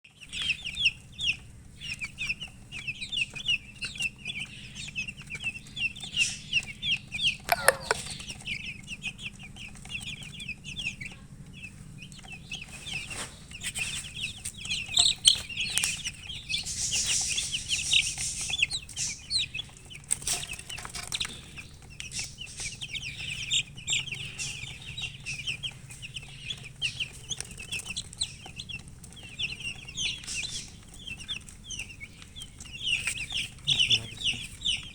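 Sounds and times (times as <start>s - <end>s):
chickens chirping: 0.0s - 34.9s
longer lower chicken call: 7.5s - 8.1s.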